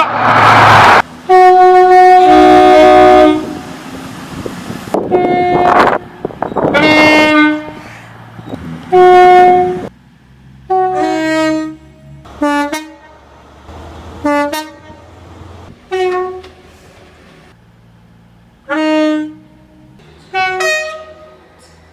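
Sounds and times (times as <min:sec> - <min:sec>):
short train horn blasts: 0:01.3 - 0:03.8, 0:05.0 - 0:07.9, 0:08.8 - 0:09.9, 0:10.7 - 0:13.2, 0:14.2 - 0:15.1, 0:15.9 - 0:16.8, 0:18.7 - 0:21.8.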